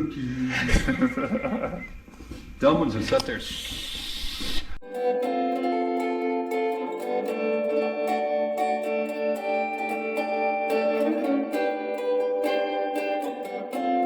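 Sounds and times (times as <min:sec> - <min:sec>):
plucked guitar music: 0:04.8 - 0:14.0.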